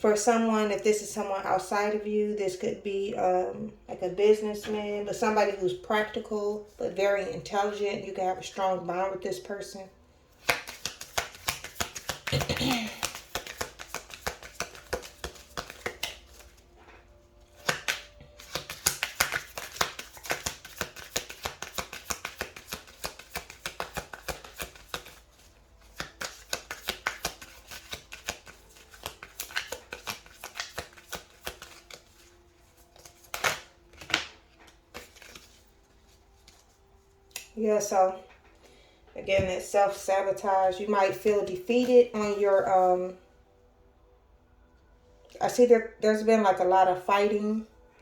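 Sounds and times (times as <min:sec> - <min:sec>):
card snaps: 0:10.4 - 0:16.4, 0:33.1 - 0:34.3, 0:37.3 - 0:37.6
cards being shuffled: 0:10.4 - 0:16.7, 0:17.5 - 0:37.5.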